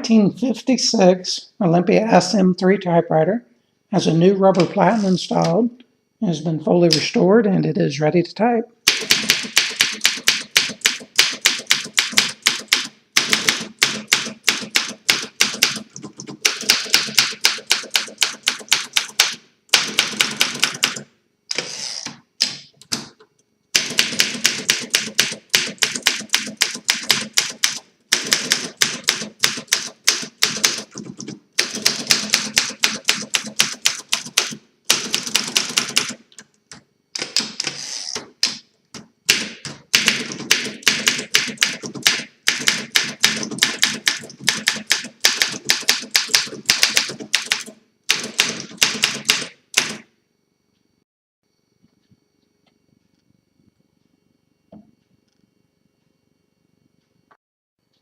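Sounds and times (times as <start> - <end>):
manual typewriter key strikes: 8.9 - 21.0, 23.8 - 36.2, 39.3 - 50.0.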